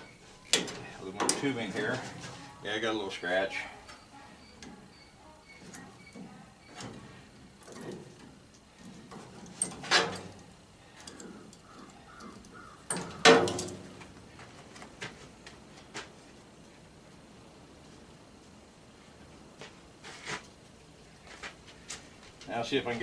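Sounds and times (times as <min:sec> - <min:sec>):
loud metal clanks: 0:12.9 - 0:13.9.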